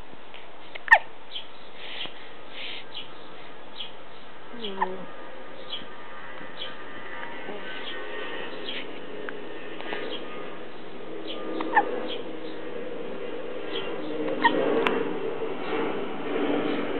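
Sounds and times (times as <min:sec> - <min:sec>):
squeaky hiccups: 0:00.8 - 0:01.1.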